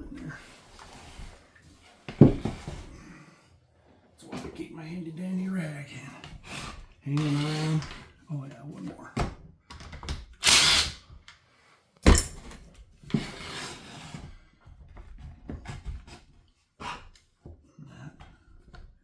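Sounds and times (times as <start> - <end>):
power driver backing out screws: 10.4 - 11.0.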